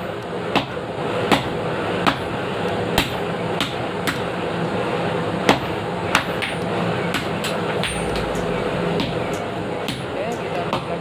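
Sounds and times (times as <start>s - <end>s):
steady hum: 5.8s - 11.0s
hammer striking metal: 7.2s - 10.8s.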